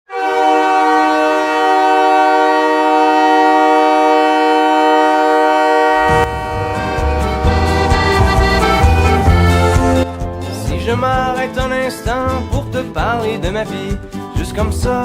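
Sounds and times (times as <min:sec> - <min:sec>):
hockey goal horn blast: 0:00.1 - 0:10.2.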